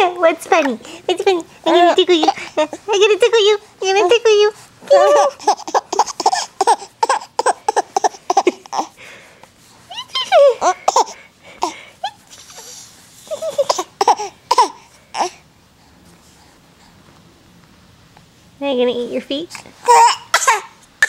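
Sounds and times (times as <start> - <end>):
baby laughing: 4.9 - 8.9, 9.9 - 11.2, 13.3 - 15.3, 19.8 - 20.8
baby squealing laugh: 4.9 - 8.9, 19.9 - 20.7.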